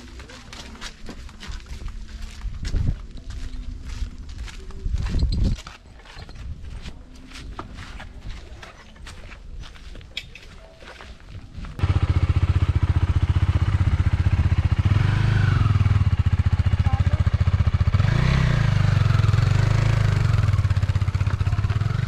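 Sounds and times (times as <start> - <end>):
motorbike engine running: 11.8 - 22.0.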